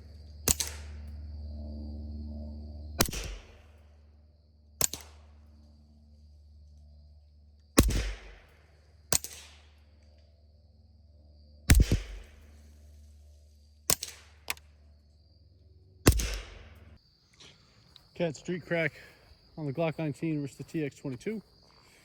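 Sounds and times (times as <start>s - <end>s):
suppressed pistol shots: 0.5s - 1.0s, 3.0s - 3.6s, 4.8s - 5.4s, 7.8s - 8.5s, 9.1s - 9.8s, 11.7s - 12.4s, 13.9s - 14.6s, 16.1s - 16.8s.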